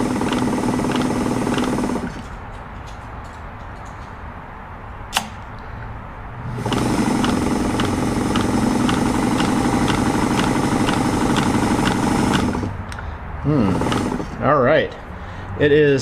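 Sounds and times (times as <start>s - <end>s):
sewing machine running: 0.0s - 2.3s, 6.5s - 12.8s, 13.5s - 14.4s
sharp click: 5.1s - 5.7s.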